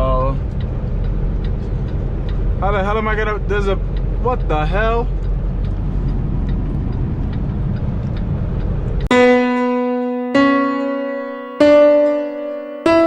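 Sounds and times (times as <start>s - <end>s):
truck engine rumble and road noise: 0.0s - 9.2s
electric piano notes: 9.0s - 13.0s.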